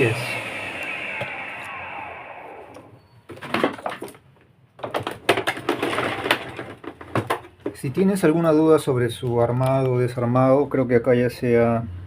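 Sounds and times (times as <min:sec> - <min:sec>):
vacuum cleaner motor winding down: 0:00.0 - 0:03.2.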